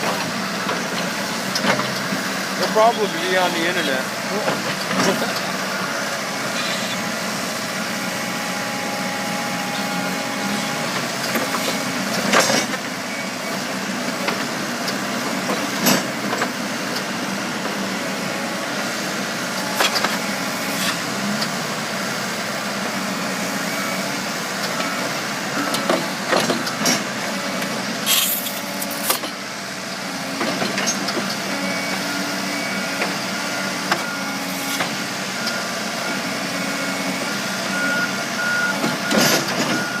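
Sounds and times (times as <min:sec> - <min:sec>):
diesel engine running: 0:00.0 - 0:40.0
short hiss: 0:28.0 - 0:28.6.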